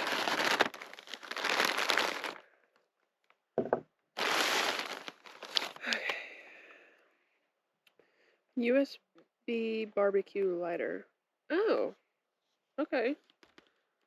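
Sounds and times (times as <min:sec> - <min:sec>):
plastic packaging crinkling: 0:00.0 - 0:02.4, 0:04.2 - 0:06.1.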